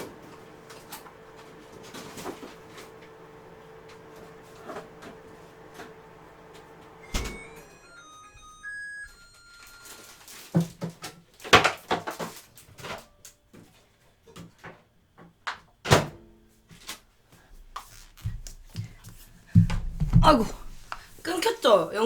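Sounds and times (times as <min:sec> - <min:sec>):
electronic beep: 0:07.0 - 0:10.1
household knocks and clatter: 0:18.2 - 0:21.0.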